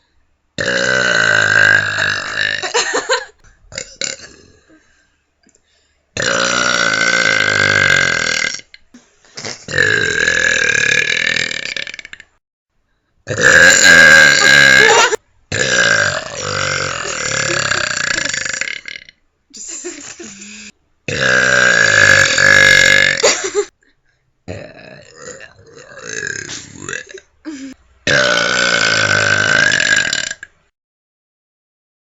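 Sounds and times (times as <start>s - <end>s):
person belching: 0.6s - 3.2s, 3.8s - 4.8s, 6.2s - 8.8s, 9.4s - 12.3s, 13.3s - 19.2s, 20.2s - 23.7s, 24.5s - 30.6s.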